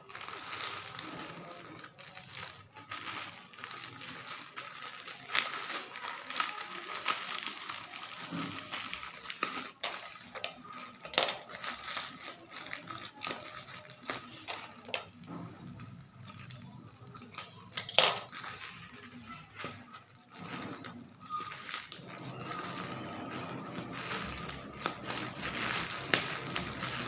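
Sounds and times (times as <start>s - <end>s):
packaging crinkling and rustling: 0.0s - 27.0s.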